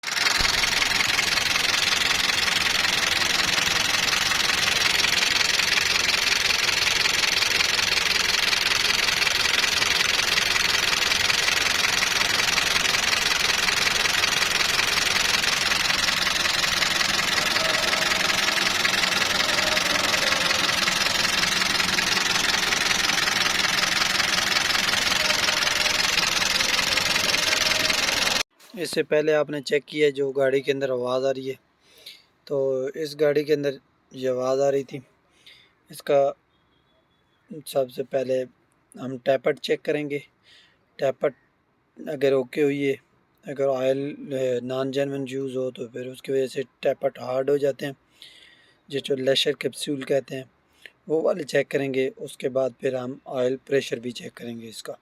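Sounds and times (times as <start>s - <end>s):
engine running with ticking clatter: 0.0s - 28.5s
man talking: 28.7s - 31.6s, 32.5s - 35.0s, 35.9s - 36.4s, 37.5s - 40.3s, 42.0s - 48.0s, 48.9s - 50.5s, 51.1s - 55.0s.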